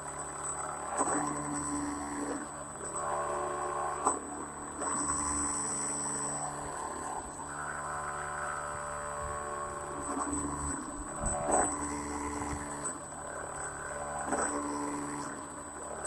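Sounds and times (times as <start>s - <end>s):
electric motor and propeller whining: 0.0s - 16.0s.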